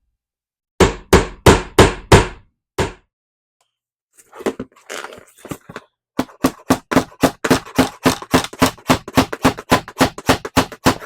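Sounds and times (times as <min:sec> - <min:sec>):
hammer tapping a nail: 0:06.2 - 0:11.0.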